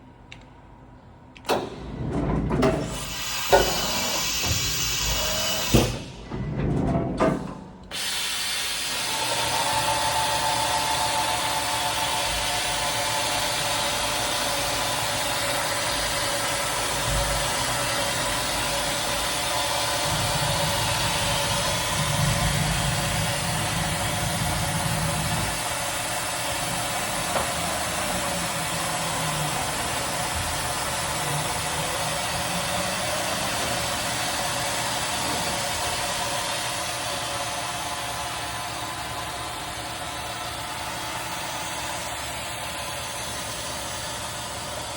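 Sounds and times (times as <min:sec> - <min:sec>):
machine whirring with whine: 0:01.4 - 0:44.9
heavy low rumble: 0:20.0 - 0:26.0.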